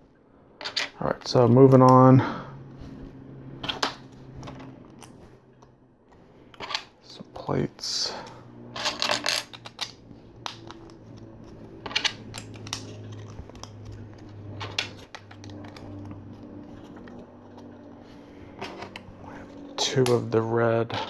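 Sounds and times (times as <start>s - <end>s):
low steady hum: 0.0s - 21.0s
plastic bricks clicking and rattling: 8.8s - 10.9s.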